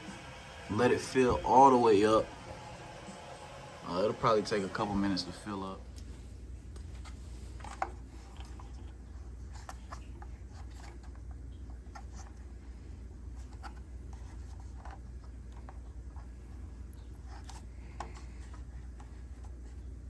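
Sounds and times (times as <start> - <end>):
water rushing through pipes: 0.0 - 5.8.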